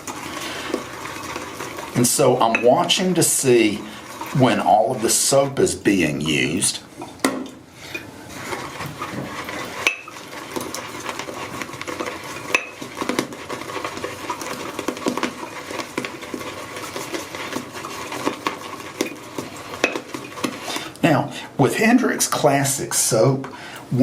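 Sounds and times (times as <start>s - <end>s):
shaving brush lathering in bowl: 0.0s - 7.2s, 7.8s - 24.0s
brush clinking on bowl: 2.2s - 5.1s, 9.7s - 20.6s.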